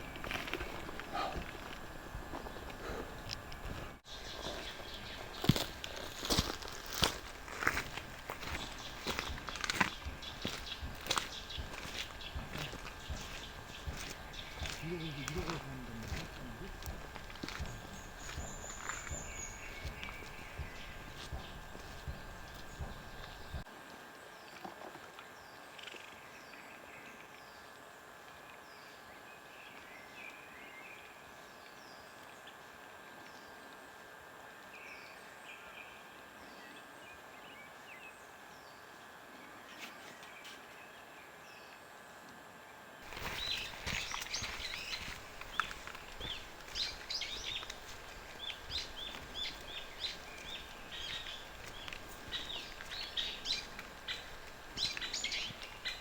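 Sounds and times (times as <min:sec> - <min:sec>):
crackling: 0:00.0 - 0:23.6, 0:43.0 - 0:56.0
small birds chirping: 0:00.0 - 0:23.7, 0:43.0 - 0:56.0.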